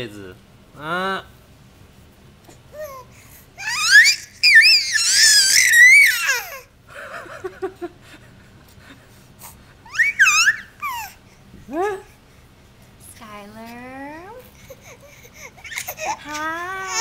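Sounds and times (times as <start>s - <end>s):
baby squealing: 3.6s - 6.6s, 9.9s - 11.2s, 15.5s - 17.0s
baby cooing: 9.9s - 11.2s, 14.6s - 17.0s.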